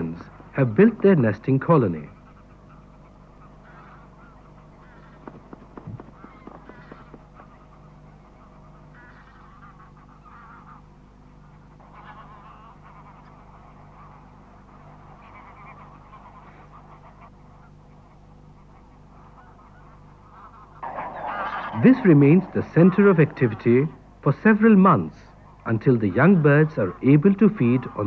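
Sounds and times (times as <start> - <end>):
steady low hum: 0.0 - 28.0
birds squawking: 2.4 - 13.3, 19.3 - 28.0.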